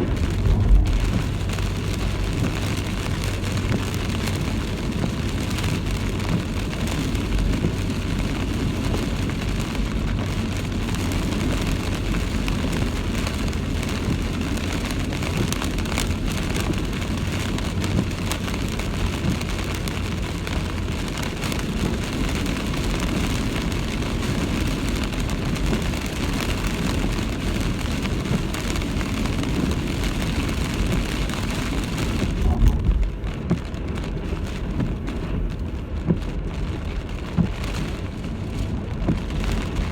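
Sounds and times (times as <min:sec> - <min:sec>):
low steady hum: 0:00.0 - 0:03.0
strong wind and heavy rain: 0:00.0 - 0:39.9.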